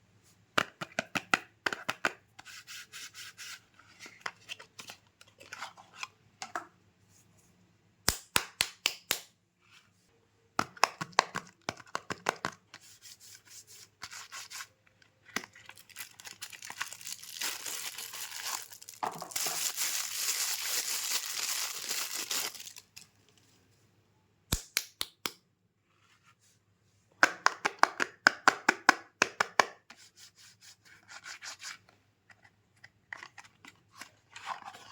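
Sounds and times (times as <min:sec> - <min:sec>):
packaging crinkling: 0:15.6 - 0:23.1
packaging tearing rustle: 0:15.7 - 0:23.1.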